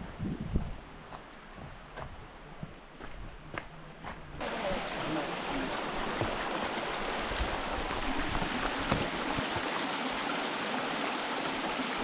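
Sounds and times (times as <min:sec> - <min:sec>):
stream water rushing: 0:04.4 - 0:12.0.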